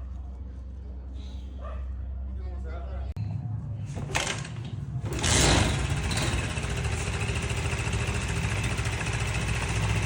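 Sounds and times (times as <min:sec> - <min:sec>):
motorcycle engine idling: 0:04.0 - 0:10.0.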